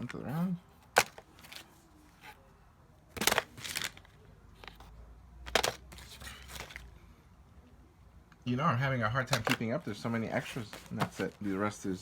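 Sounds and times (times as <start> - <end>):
papers rustling in cardboard box: 3.2 - 4.9, 5.5 - 6.9, 9.4 - 12.0.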